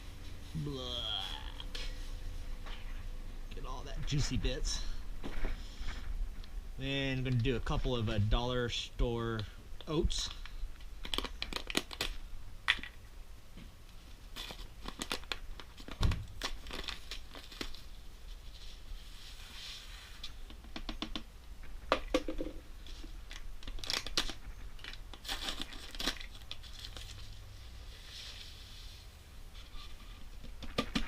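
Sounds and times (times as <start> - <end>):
packaging tearing and crinkling: 11.0 - 12.2, 14.4 - 17.9, 23.3 - 27.4.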